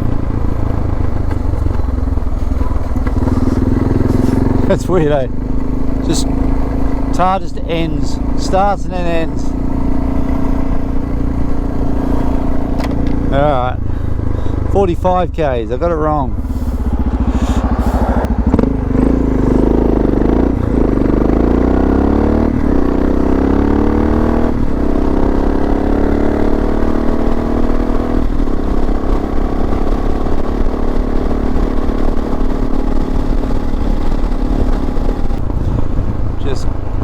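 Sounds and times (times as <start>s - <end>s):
motorcycle engine accelerating: 0.0s - 37.0s.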